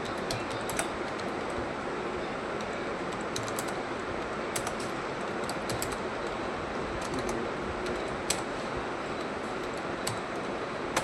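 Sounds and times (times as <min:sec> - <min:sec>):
computer keyboard typing: 0:00.0 - 0:01.5, 0:02.6 - 0:06.4, 0:09.5 - 0:11.0
steady background hiss: 0:00.0 - 0:11.0.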